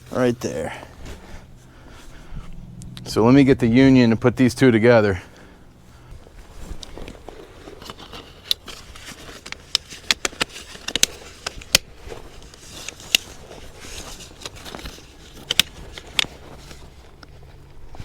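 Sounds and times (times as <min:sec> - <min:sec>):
drain pipes clicking and scraping: 0:05.4 - 0:18.0.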